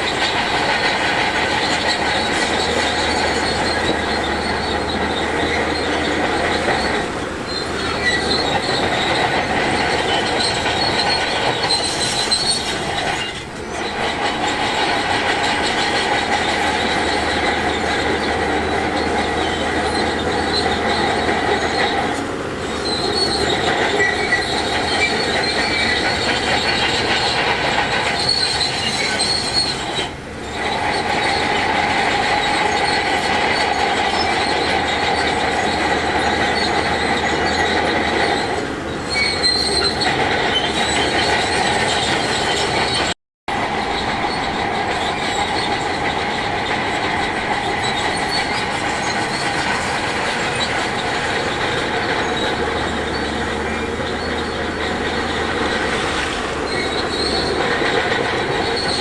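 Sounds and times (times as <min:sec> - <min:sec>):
diesel machinery running: 0:00.0 - 0:59.0
metallic squeal: 0:00.0 - 0:59.0.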